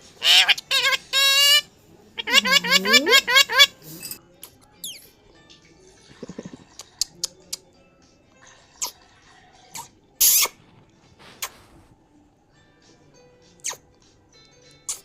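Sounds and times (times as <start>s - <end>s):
faint background music: 0.0s - 15.0s
parrot squawk: 0.1s - 4.2s.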